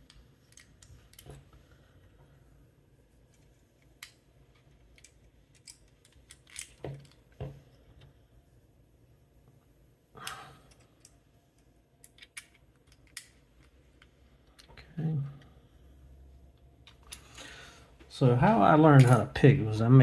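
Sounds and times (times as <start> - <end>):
small metal parts clicking: 0.0 - 1.4, 3.3 - 7.2, 12.0 - 14.8.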